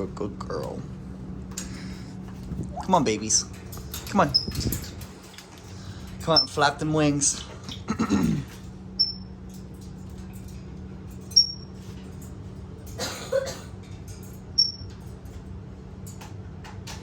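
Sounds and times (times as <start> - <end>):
steady low hum: 0.0 - 17.0.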